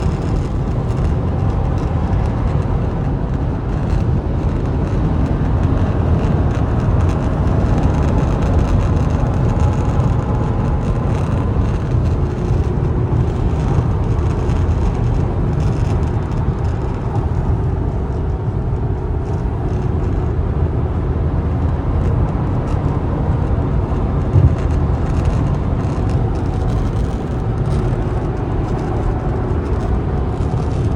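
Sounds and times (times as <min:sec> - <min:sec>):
road and wind noise in car cabin: 0:00.0 - 0:30.9
dashboard rattle: 0:23.8 - 0:29.2.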